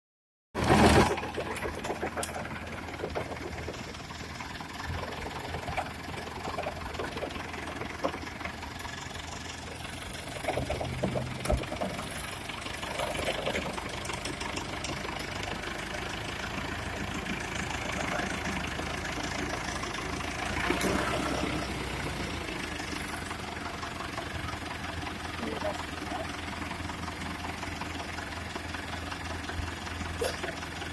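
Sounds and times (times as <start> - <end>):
diesel engine running: 0.6 - 30.9
clanks and knocks: 10.1 - 15.3.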